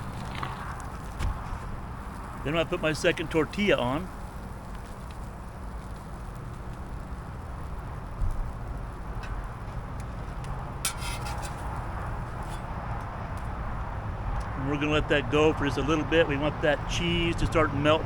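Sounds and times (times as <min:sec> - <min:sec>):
low outdoor rumble: 0:00.0 - 0:18.0
clicks or scrape: 0:10.9 - 0:11.8.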